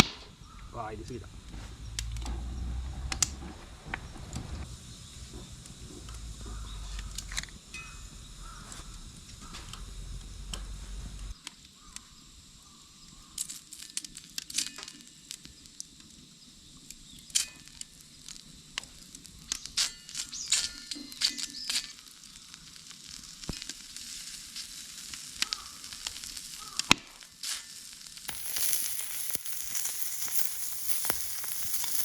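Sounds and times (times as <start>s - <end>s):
wood fire crackling and popping: 0.0s - 32.0s
low rumble: 1.3s - 11.4s.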